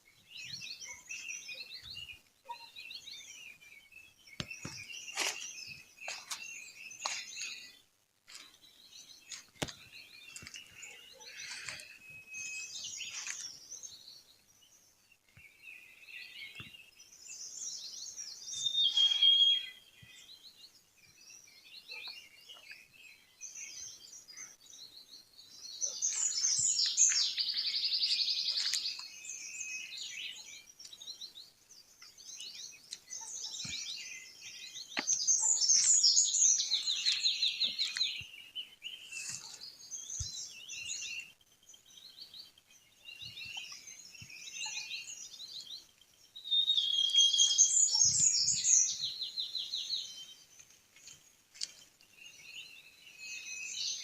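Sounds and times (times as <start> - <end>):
small birds chirping: 0.0 - 54.0
whistled bird note: 18.6 - 19.8.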